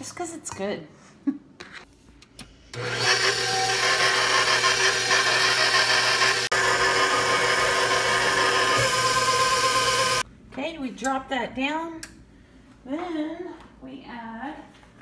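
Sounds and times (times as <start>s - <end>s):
electric mixer beating batter: 2.8s - 10.2s.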